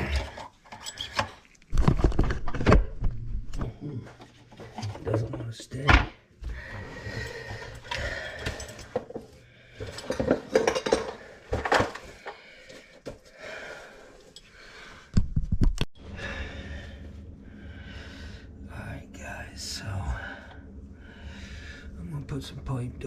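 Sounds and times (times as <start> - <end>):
plumbing parts clinking: 0.0 - 2.0, 7.1 - 12.4.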